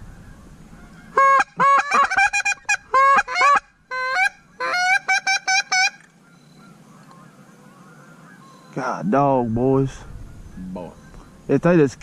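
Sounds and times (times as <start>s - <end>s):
waterfowl call honking: 0.0s - 9.0s.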